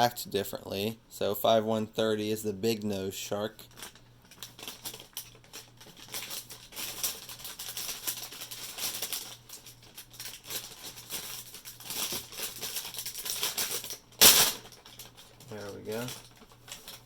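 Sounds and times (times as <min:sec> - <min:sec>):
packaging crinkling and rustling: 0:03.6 - 0:17.0.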